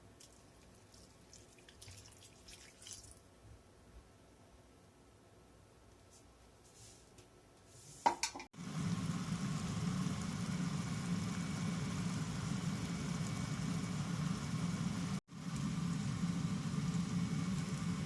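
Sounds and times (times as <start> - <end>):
pan cooking with hiss: 8.0 - 18.0
low hum: 8.6 - 18.0.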